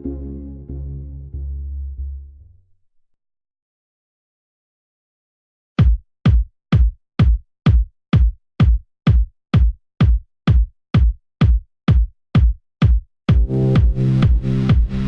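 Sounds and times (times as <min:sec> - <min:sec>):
drum machine kick drum: 0:05.8 - 0:15.0
electronic dance music: 0:13.3 - 0:15.0.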